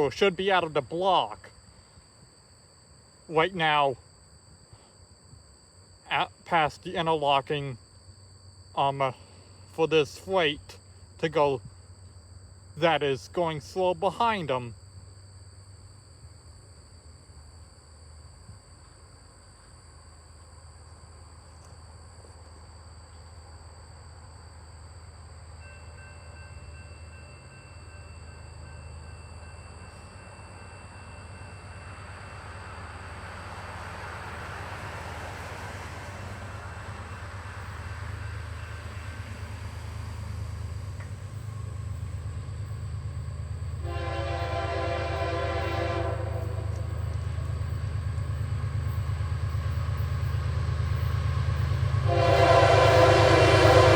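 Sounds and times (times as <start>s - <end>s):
diesel locomotive engine rumble: 0.0s - 4.0s, 4.6s - 53.9s
locomotive air horn blast: 43.8s - 47.1s, 52.0s - 53.9s.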